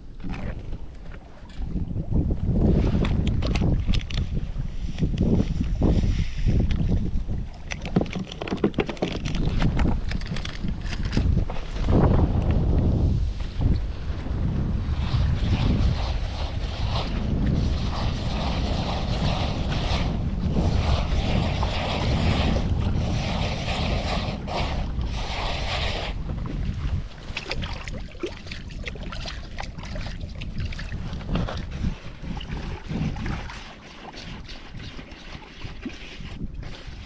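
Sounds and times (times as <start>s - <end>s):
wind buffeting microphone: 0.0s - 37.0s
scattered clicks and knocks: 7.7s - 11.3s.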